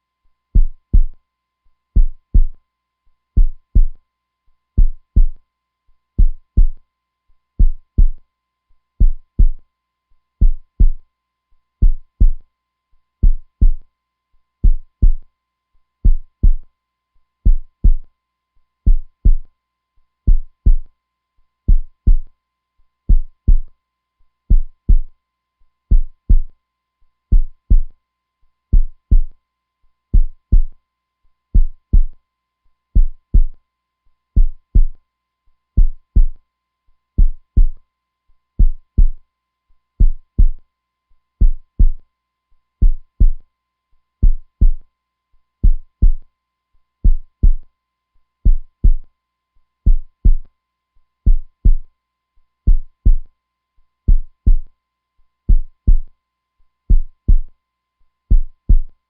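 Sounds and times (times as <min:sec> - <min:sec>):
heartbeat double thump: 0:04.8 - 0:05.4, 0:06.2 - 0:06.8, 0:11.8 - 0:12.4, 0:13.2 - 0:13.8, 0:17.5 - 0:18.0, 0:18.9 - 0:19.4, 0:20.3 - 0:20.8, 0:25.9 - 0:26.5, 0:30.2 - 0:30.7, 0:31.6 - 0:32.1, 0:33.0 - 0:33.5, 0:37.2 - 0:37.8, 0:38.6 - 0:39.2, 0:42.8 - 0:43.4, 0:44.2 - 0:44.8, 0:48.5 - 0:49.0, 0:49.9 - 0:50.4, 0:51.3 - 0:51.8, 0:52.7 - 0:53.2, 0:56.9 - 0:57.5.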